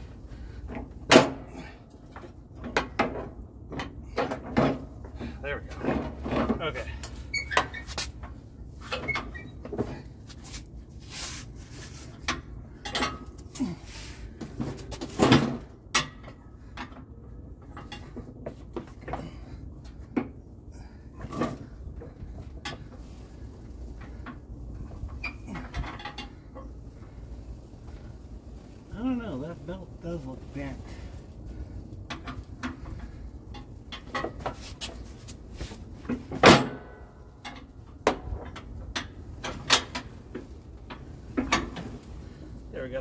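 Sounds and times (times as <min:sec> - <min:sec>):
metal clanks and knocks: 0:00.6 - 0:10.0, 0:12.2 - 0:20.4, 0:24.0 - 0:26.7, 0:32.1 - 0:34.7, 0:36.0 - 0:42.0.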